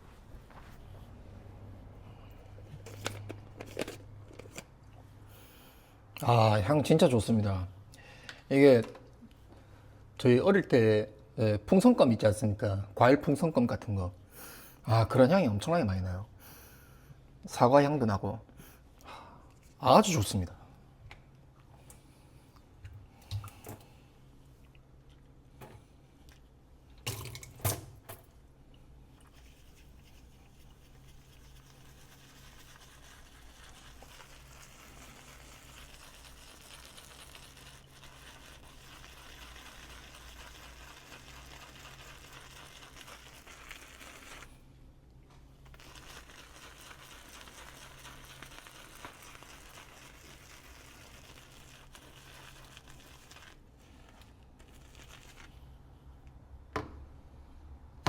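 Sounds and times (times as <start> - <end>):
shaving brush lathering soap: 29.2 - 44.6, 45.7 - 55.6.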